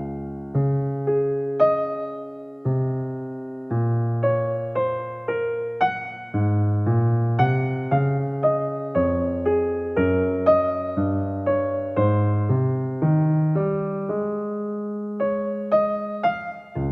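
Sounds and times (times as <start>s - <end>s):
gentle electric piano music: 0.0s - 16.9s.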